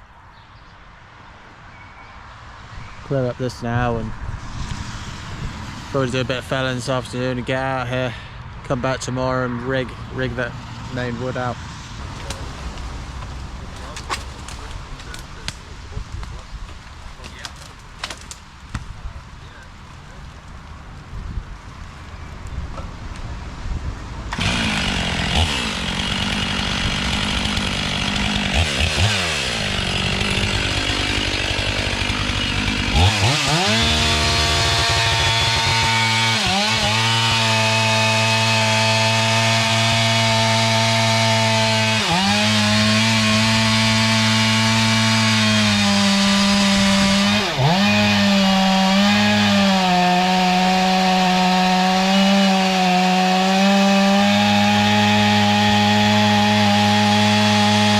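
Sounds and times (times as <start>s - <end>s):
chainsaw cutting wood: 10.8s - 18.5s, 24.3s - 57.9s.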